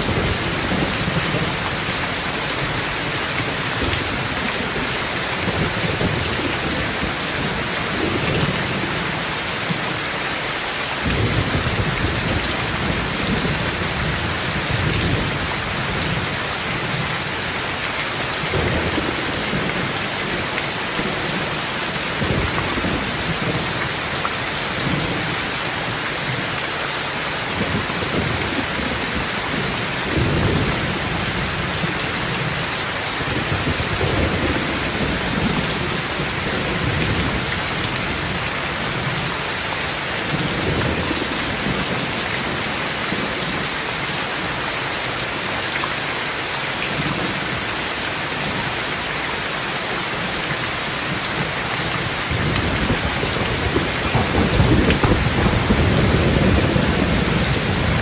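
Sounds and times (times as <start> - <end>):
thunder rumbling: 0.0 - 9.8, 11.0 - 17.6, 18.4 - 26.4, 27.5 - 39.3, 51.3 - 58.0
heavy rain falling: 0.0 - 58.0.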